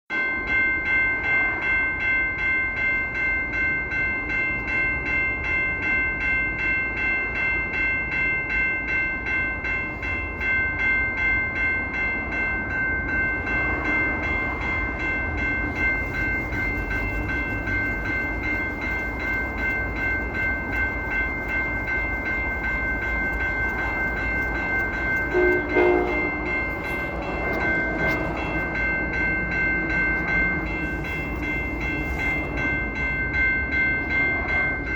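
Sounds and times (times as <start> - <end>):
locomotive air horn chord: 25.3 - 26.5.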